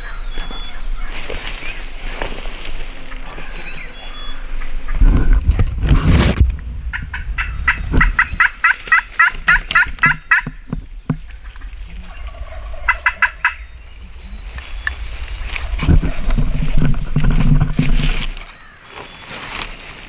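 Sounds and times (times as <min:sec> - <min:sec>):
loud low sound: 0:05.1 - 0:08.8
turkey yelps: 0:11.3 - 0:15.0.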